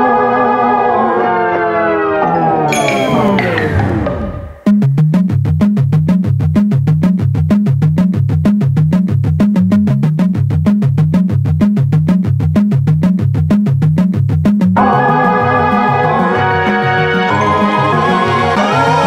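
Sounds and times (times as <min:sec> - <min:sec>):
fast beat music with bass: 0:02.7 - 0:19.0.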